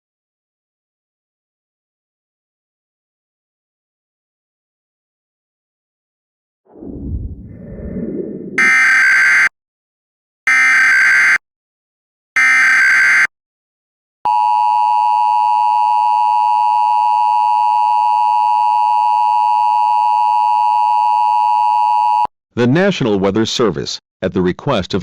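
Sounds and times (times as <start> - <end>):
brief low noise: 6.7 - 8.8
data tone bursts: 8.6 - 9.5
two-tone attention signal: 8.6 - 9.5.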